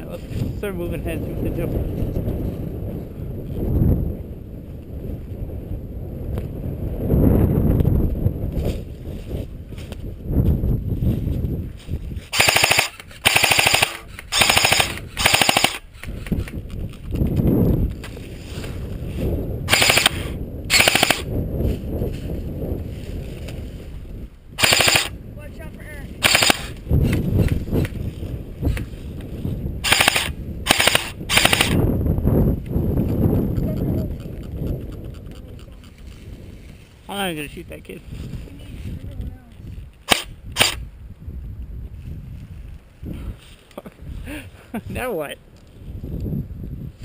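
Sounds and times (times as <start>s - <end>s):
airsoft gun full-auto bursts: 12.3s - 16.0s, 19.7s - 21.3s, 24.6s - 25.2s, 26.2s - 26.8s, 29.8s - 31.8s, 40.1s - 40.8s.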